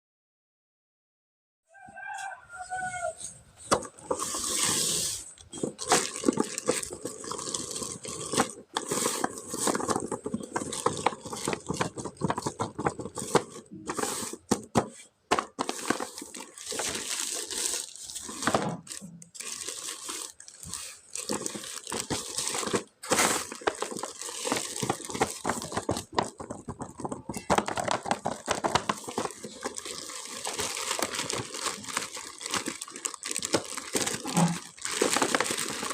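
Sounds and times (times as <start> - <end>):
packaging crinkling and rustling: 3.6 - 35.9.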